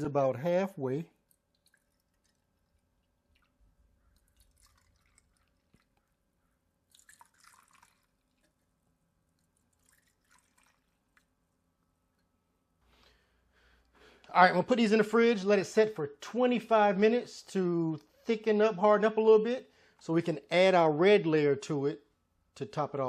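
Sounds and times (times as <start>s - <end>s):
liquid pouring and dripping: 1.2s - 12.3s.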